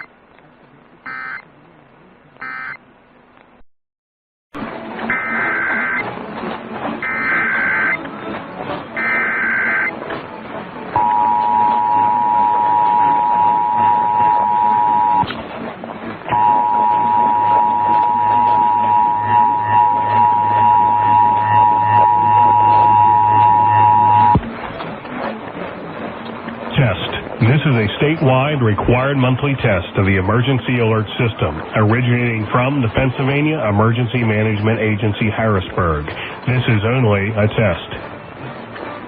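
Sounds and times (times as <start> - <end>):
harsh two-tone attention signal: 1.1 - 1.4, 2.4 - 2.8, 5.1 - 6.1, 7.0 - 8.1, 9.0 - 10.0, 10.9 - 15.3, 16.3 - 24.4.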